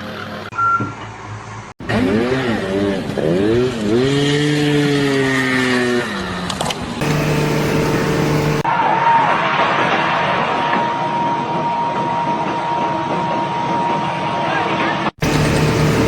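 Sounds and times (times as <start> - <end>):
engine revving: 1.8 - 6.0, 7.0 - 8.6, 15.2 - 16.0
second engine running steadily: 7.0 - 8.6, 15.2 - 16.0.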